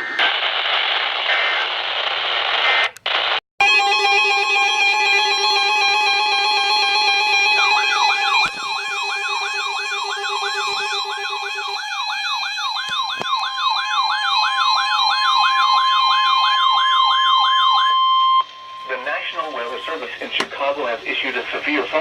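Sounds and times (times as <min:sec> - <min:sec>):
electronic siren sweep: 0:03.7 - 0:20.0.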